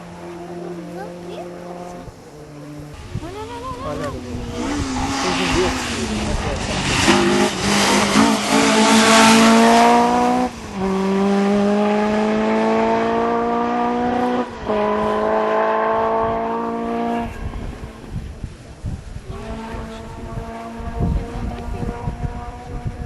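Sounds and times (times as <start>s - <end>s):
car engine accelerating: 0.0s - 18.5s, 19.2s - 23.0s
loud rushing noise: 2.9s - 13.5s.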